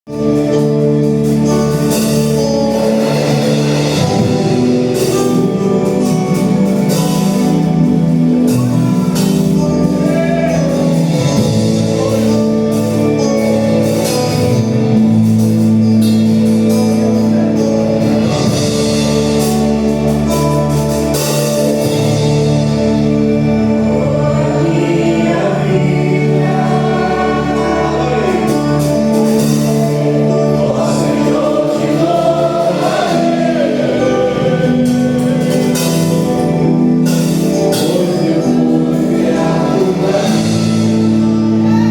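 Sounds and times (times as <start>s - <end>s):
band playing gospel music: 0.0s - 41.9s
people singing: 3.0s - 14.5s, 23.2s - 41.9s.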